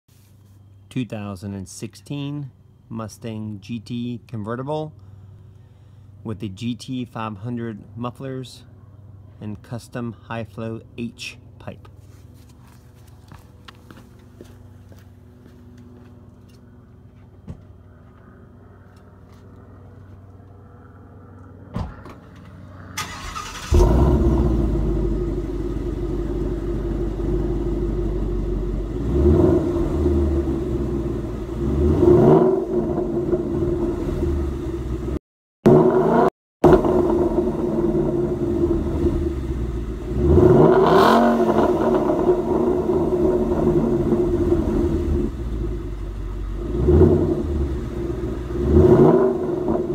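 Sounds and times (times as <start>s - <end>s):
car engine starting and idling: 17.5s - 49.9s
engine revving: 21.8s - 49.9s.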